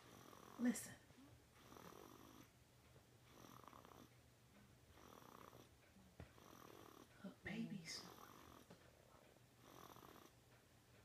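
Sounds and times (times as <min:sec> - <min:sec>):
baby snoring softly: 0:00.0 - 0:00.9, 0:01.6 - 0:02.5, 0:03.2 - 0:04.1, 0:04.9 - 0:07.3, 0:08.0 - 0:08.8, 0:09.6 - 0:10.4.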